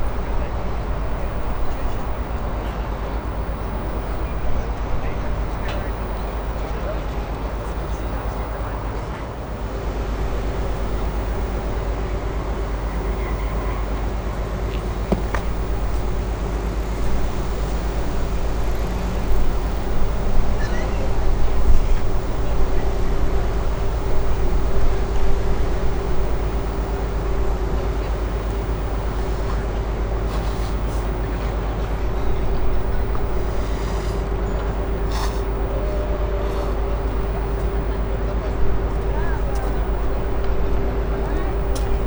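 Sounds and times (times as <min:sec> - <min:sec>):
faint steady hum: 0:00.0 - 0:42.0
low rumble of machinery: 0:00.0 - 0:42.0.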